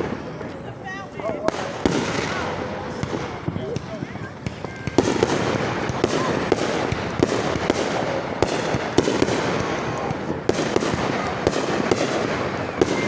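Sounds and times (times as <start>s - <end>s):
fireworks bangs: 0.0s - 13.0s
fireworks crackling: 0.0s - 13.0s.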